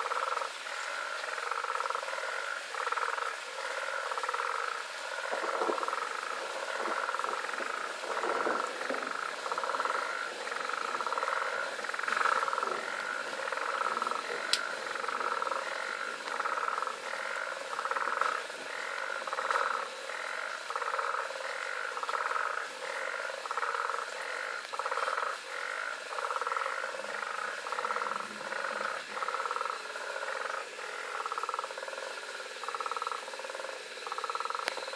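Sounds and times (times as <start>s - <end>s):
frogs calling: 0.0s - 34.9s.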